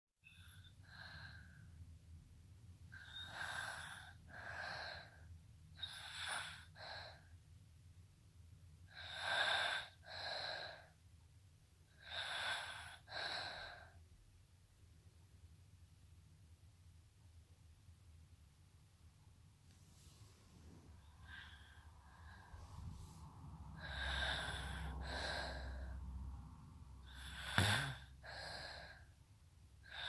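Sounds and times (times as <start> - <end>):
raspy snoring: 23.8 - 25.9, 27.0 - 29.0.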